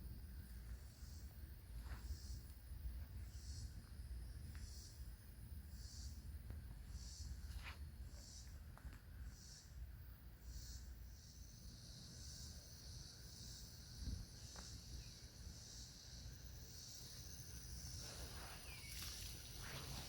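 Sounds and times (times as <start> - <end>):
high-pitched insect chorus: 0.0 - 20.0.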